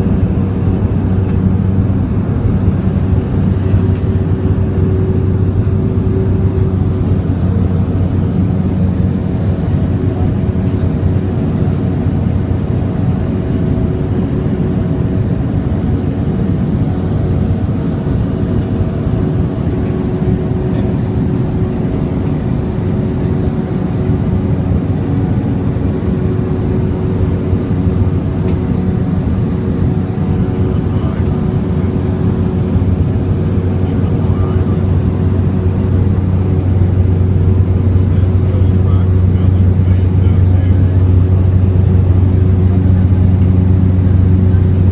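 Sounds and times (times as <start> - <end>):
propeller airplane engine drone: 0.0 - 44.9.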